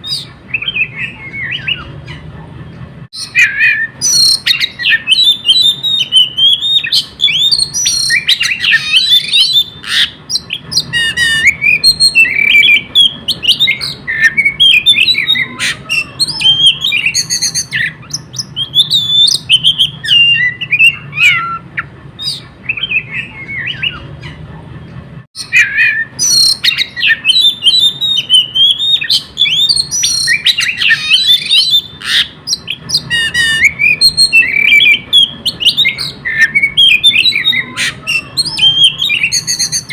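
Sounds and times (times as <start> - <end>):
bird singing whistles and chirps: 0.0 - 1.9, 3.2 - 24.4, 25.4 - 39.9.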